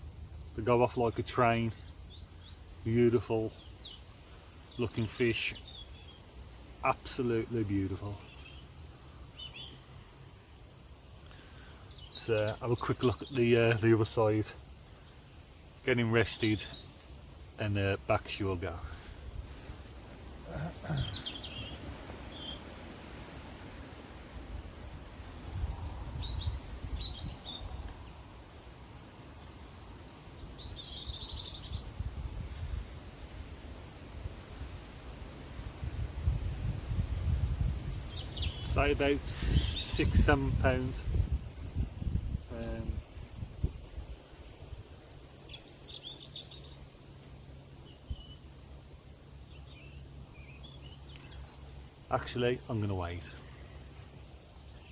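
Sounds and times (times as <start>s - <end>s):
small birds chirping: 0.0s - 54.9s
wind rumble on microphone: 24.5s - 28.3s, 31.2s - 33.0s, 35.6s - 44.9s.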